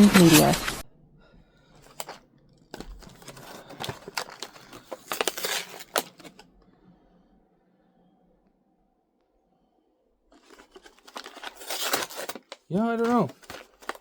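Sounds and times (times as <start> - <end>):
plastic packaging crinkling: 1.8 - 6.4, 10.4 - 14.0.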